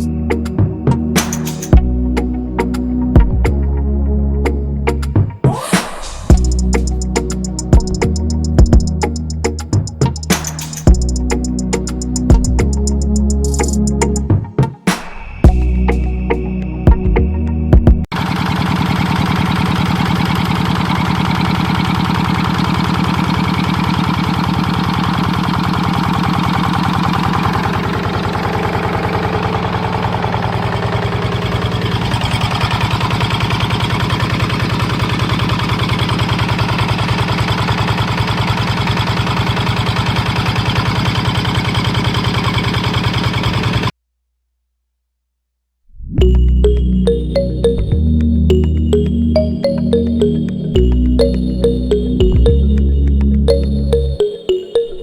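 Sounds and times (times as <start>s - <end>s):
small engine chugging: 6.3s - 13.8s, 18.2s - 43.9s.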